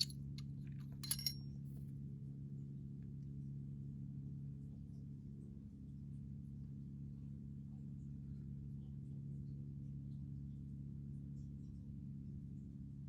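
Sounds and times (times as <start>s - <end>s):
low electrical hum: 0.0s - 1.5s.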